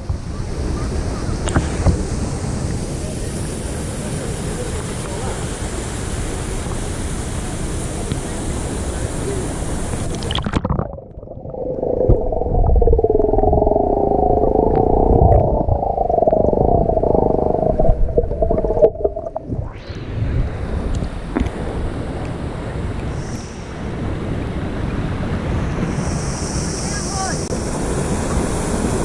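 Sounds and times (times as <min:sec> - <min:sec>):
muffled underwater sound: 0:00.0 - 0:05.7, 0:06.3 - 0:20.7.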